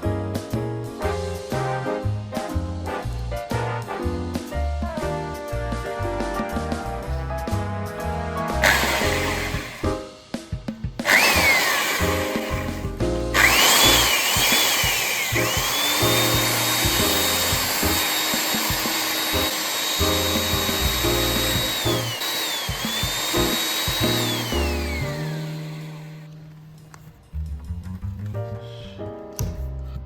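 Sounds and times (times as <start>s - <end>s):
background music: 0.0s - 30.0s
power drill boring into wood: 8.6s - 10.0s, 11.0s - 26.3s.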